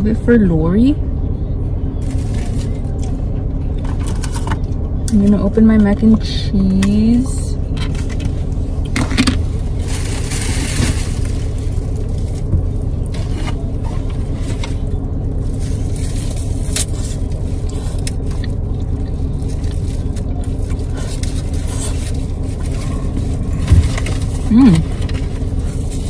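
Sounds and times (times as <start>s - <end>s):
low engine rumble: 0.0s - 26.0s
plastic container rustling: 9.0s - 26.0s.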